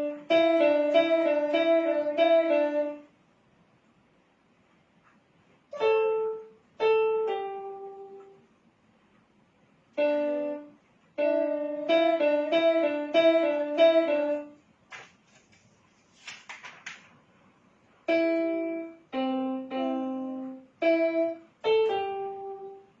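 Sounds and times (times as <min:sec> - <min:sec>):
piano chords and notes: 0:00.0 - 0:03.2, 0:05.7 - 0:08.6, 0:09.9 - 0:14.7, 0:18.0 - 0:23.0.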